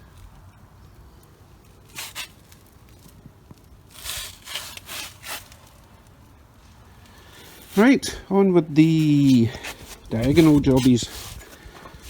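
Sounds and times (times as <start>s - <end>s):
short scraping noises: 4.0s - 5.8s, 8.9s - 12.0s.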